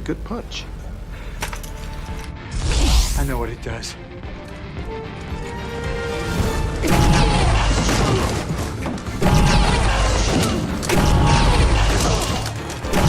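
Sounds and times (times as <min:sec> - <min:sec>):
film score: 0:00.0 - 0:13.0.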